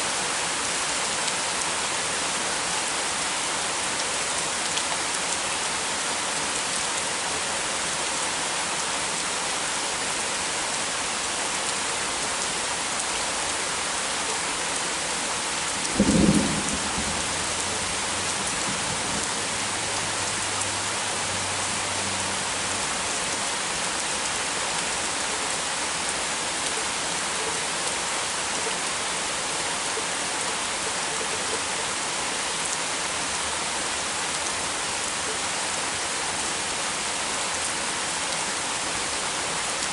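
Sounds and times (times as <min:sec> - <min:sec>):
heavy rain falling: 0:00.0 - 0:39.9
thunderclap and rumble: 0:15.8 - 0:17.6.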